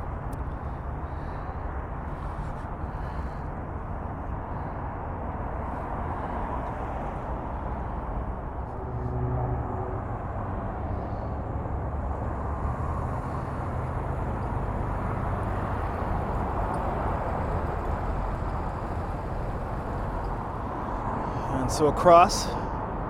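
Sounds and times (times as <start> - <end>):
low outdoor rumble: 0.0 - 23.0
faint humming tone: 8.6 - 11.5.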